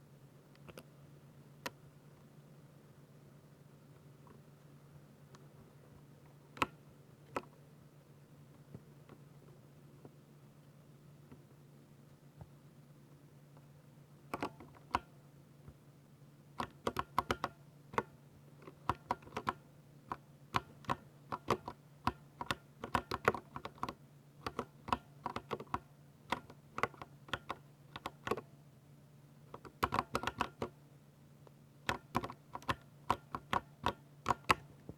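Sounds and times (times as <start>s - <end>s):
faint low hum: 0.0s - 34.9s
mechanical keyboard key clacks: 18.8s - 19.6s.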